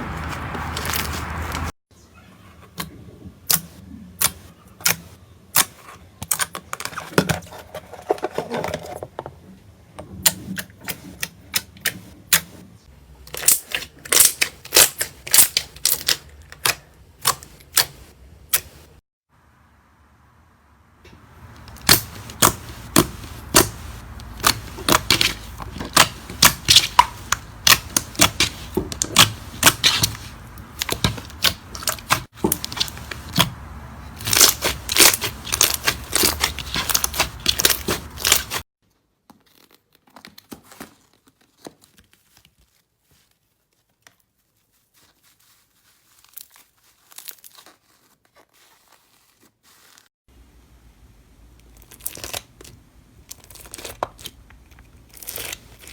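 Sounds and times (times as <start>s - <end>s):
slime popping and crackling: 13.3s - 18.7s, 21.6s - 38.6s.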